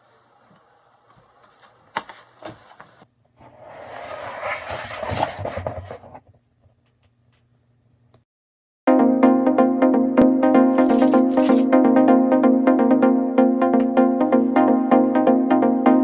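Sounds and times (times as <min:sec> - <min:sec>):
scraping and rubbing: 0:02.5 - 0:06.2, 0:10.8 - 0:11.7.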